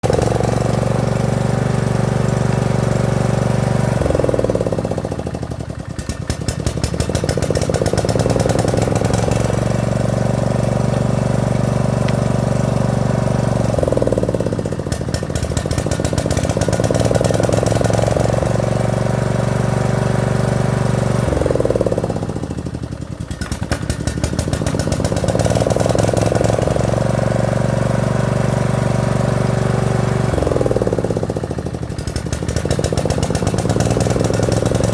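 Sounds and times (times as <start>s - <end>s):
lawn mower engine chugging: 0.0s - 34.9s.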